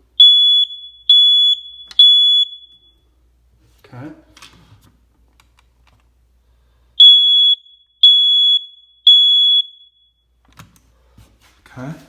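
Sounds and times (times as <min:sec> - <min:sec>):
smoke alarm beeping: 0:00.0 - 0:03.2, 0:07.0 - 0:10.4.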